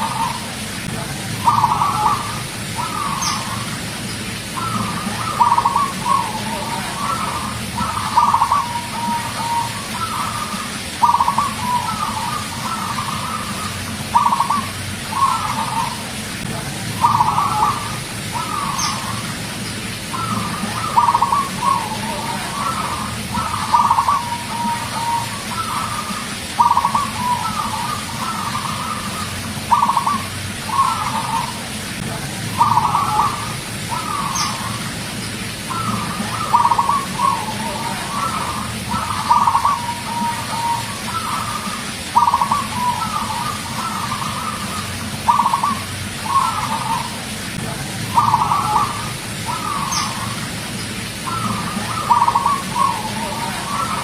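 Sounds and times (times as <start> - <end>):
dove cooing: 0.0 - 54.0.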